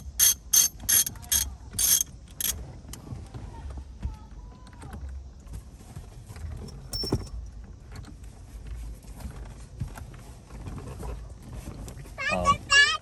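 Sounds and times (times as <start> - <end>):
hand tools and metal parts clicking: 0.0 - 2.6.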